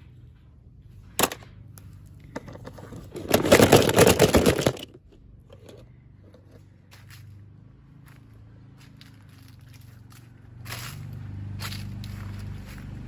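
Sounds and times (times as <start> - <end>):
packaging crinkling and rustling: 3.0 - 4.9.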